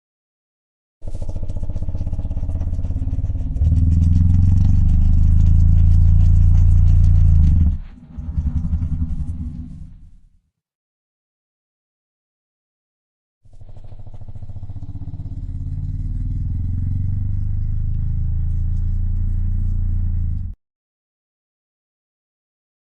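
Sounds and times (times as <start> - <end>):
low rasping creature growl: 1.0 - 10.3, 13.6 - 20.6.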